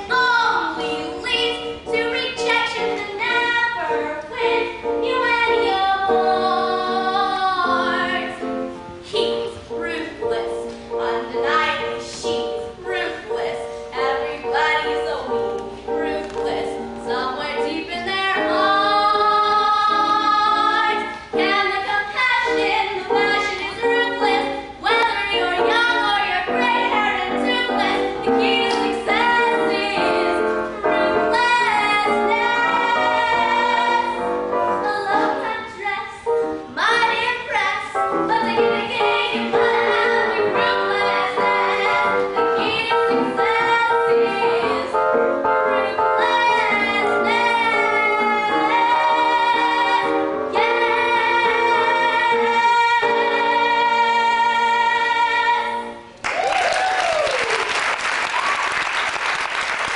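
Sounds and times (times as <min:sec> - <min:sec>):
woman singing: 0:09.1 - 0:34.2, 0:34.8 - 0:45.0.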